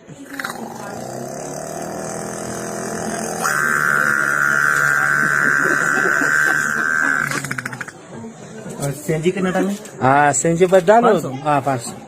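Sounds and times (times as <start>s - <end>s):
boy imitating engine drone: 0.4s - 8.0s.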